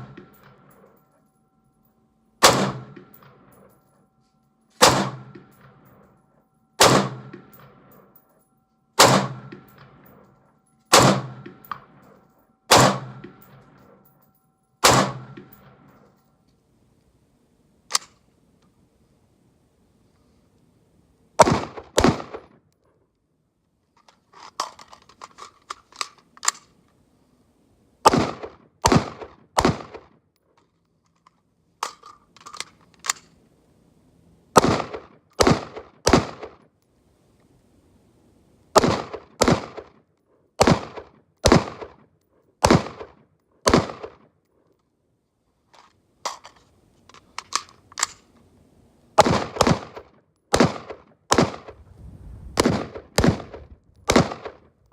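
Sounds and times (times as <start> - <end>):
quiet metal clicks and clinks: 0.0 - 17.2, 22.7 - 27.0, 30.3 - 33.8, 45.6 - 48.5
sharp gunshots: 2.4 - 3.0, 4.8 - 5.3, 6.8 - 7.4, 9.0 - 9.7, 10.9 - 11.5, 12.7 - 13.3, 14.8 - 15.6, 21.4 - 22.5, 28.0 - 30.1, 34.6 - 36.6, 38.8 - 39.9, 40.6 - 42.0, 42.6 - 44.2, 49.2 - 51.8, 52.5 - 54.7.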